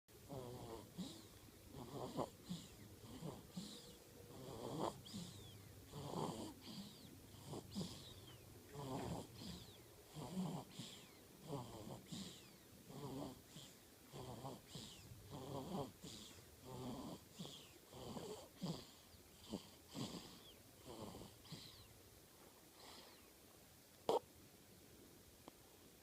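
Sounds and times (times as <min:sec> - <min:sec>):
snoring with whistling wheeze: 0:00.3 - 0:21.9.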